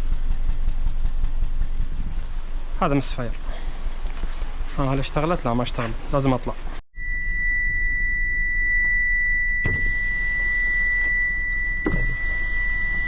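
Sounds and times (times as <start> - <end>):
low steady rumble: 0.0 - 13.0
high-pitched electronic beep tone: 7.0 - 13.0
short knocks: 11.8 - 12.2.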